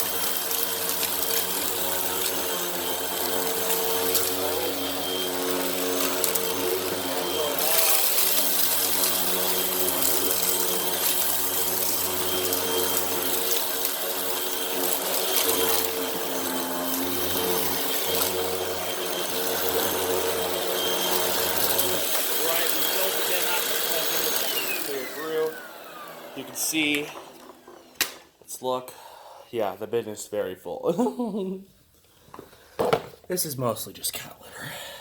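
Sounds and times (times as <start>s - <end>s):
grit crackling in vacuum: 0.0s - 25.6s
upright vacuum running: 0.0s - 28.4s.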